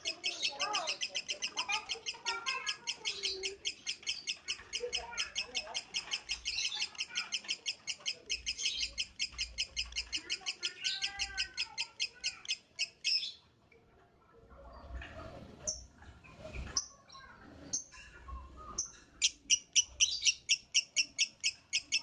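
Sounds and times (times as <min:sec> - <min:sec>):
bird chirps: 0:00.0 - 0:13.4, 0:16.8 - 0:22.0
lovebird chattering: 0:00.0 - 0:13.4, 0:18.8 - 0:22.0.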